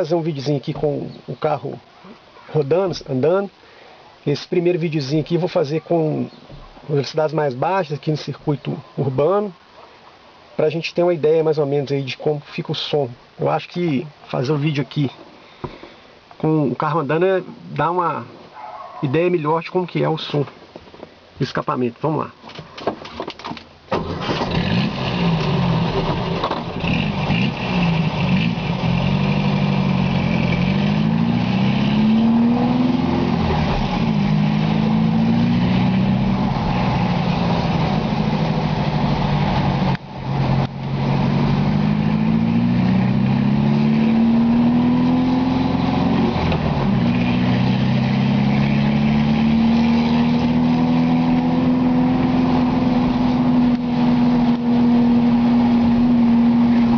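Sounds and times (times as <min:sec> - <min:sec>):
car engine accelerating: 0:24.0 - 0:56.9.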